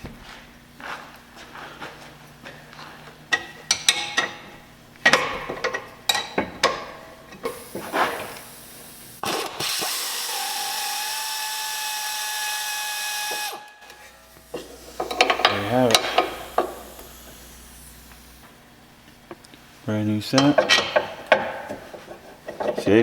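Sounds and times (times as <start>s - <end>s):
power tool whining: 7.5s - 18.5s
hand tools clicking on metal: 14.6s - 17.1s.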